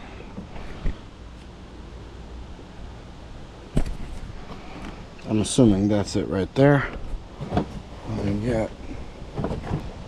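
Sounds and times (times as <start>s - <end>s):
dull thump: 3.7s - 4.2s
quiet handling noise: 3.7s - 10.0s.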